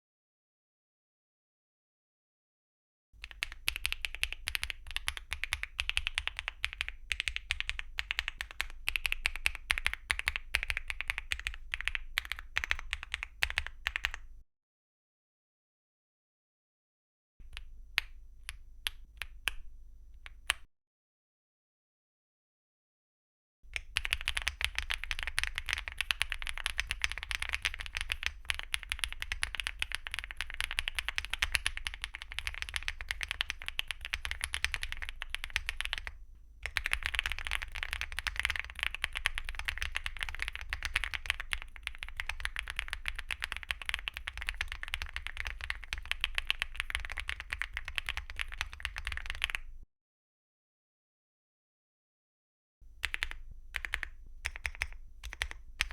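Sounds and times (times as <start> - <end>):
mechanical keyboard typing: 3.2 - 14.2, 23.8 - 49.7, 53.0 - 55.9.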